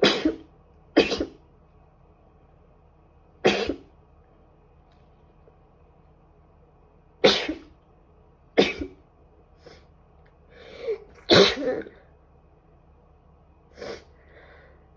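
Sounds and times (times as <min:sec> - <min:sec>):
woman sneezing: 0:10.9 - 0:11.9.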